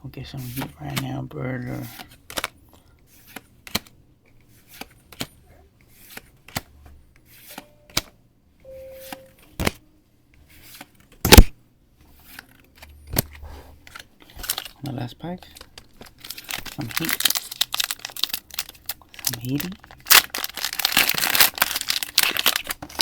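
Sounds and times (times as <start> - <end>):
cards flicking and tapping: 3.3 - 3.9, 4.7 - 5.4, 6.0 - 6.7, 7.4 - 8.2.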